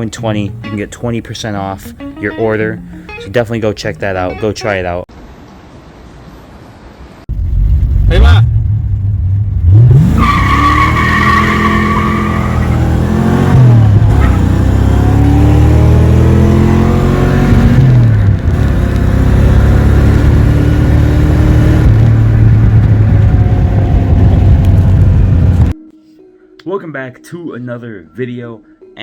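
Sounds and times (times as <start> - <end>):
car engine accelerating: 7.3 - 25.8
tyres squealing: 10.1 - 13.0.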